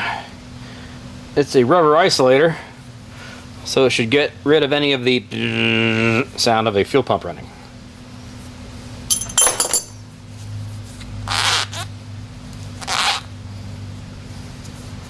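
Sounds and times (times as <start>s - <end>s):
steady low hum: 0.0s - 15.0s
metallic clinks: 9.1s - 10.1s.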